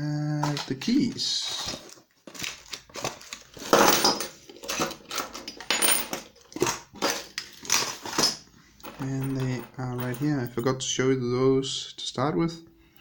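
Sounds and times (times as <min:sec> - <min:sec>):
metal keys clattering on tabletop: 0:03.6 - 0:10.6.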